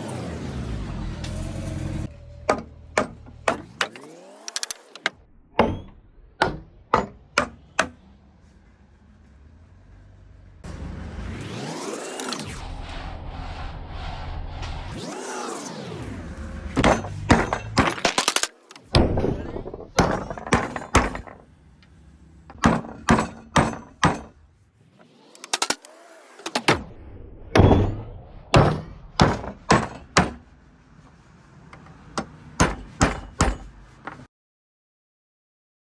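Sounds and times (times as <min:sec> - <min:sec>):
hard strikes on wood: 0:02.5 - 0:04.0, 0:05.6 - 0:08.0, 0:16.8 - 0:18.1, 0:18.9 - 0:21.4, 0:22.6 - 0:24.3, 0:28.6 - 0:30.4, 0:32.2 - 0:34.3.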